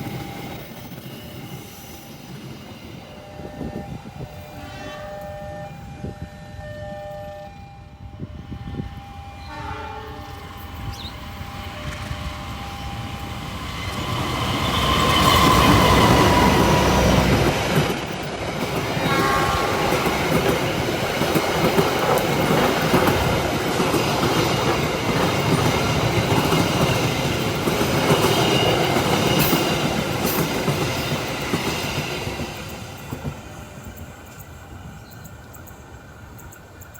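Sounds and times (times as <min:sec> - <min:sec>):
train wheels rumbling on rails: 0:00.0 - 0:07.0, 0:07.6 - 0:36.9
train horn: 0:03.1 - 0:17.4, 0:18.6 - 0:20.9.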